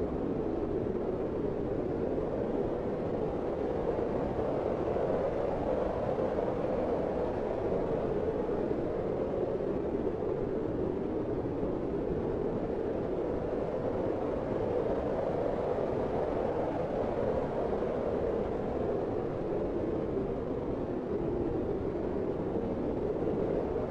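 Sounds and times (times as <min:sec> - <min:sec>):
blizzard wind blowing: 0:00.0 - 0:23.9.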